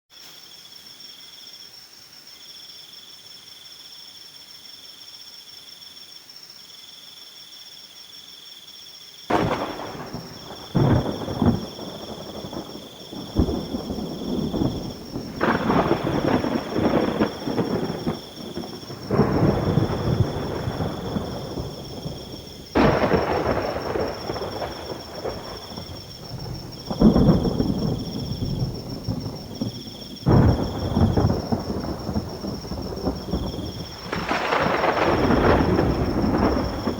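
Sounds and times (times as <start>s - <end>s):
crickets chirping: 0.1s - 36.9s
light rain: 9.2s - 36.9s
thunder claps and rumbles: 9.3s - 36.9s.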